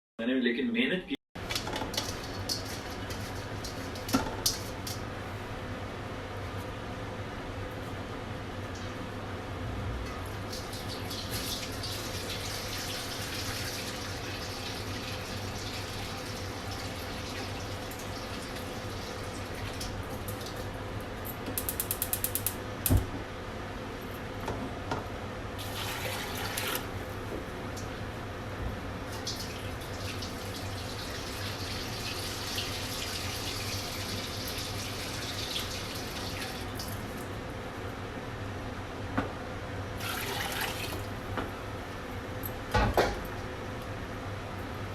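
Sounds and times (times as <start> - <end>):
tap water running into sink: 40.0 - 41.1.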